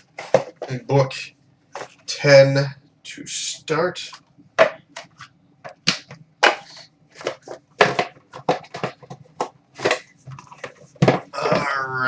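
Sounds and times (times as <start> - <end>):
cards and packaging clicks and rustles: 0.0 - 0.8, 4.6 - 11.7.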